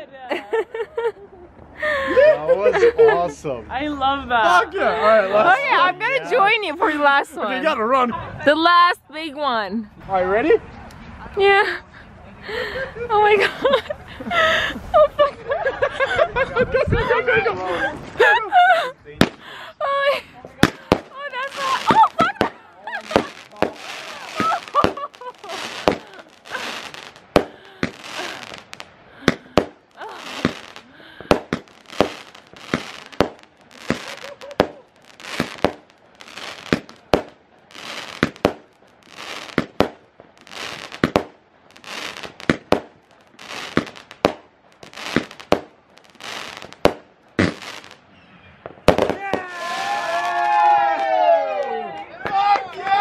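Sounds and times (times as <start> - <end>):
firework shots with crackling tails: 19.2 - 19.5, 20.6 - 48.0, 48.6 - 49.5.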